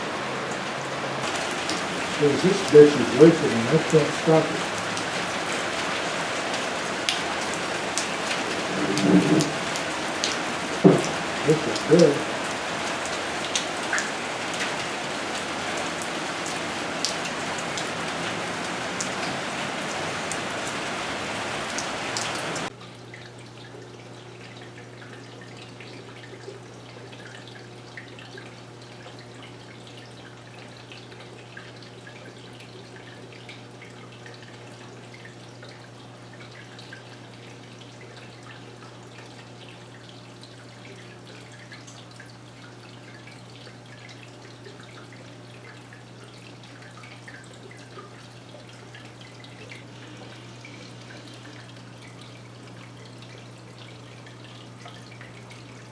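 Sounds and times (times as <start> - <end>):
steady rain falling: 0.0 - 22.7, 46.6 - 54.4
raindrops tapping: 1.2 - 22.7
faint drips: 1.2 - 55.9.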